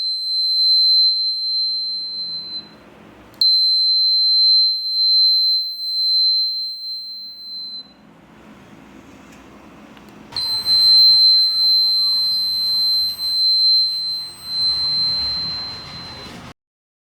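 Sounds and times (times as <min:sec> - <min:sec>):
high-pitched electronic buzzer tone: 0:10.3 - 0:16.5.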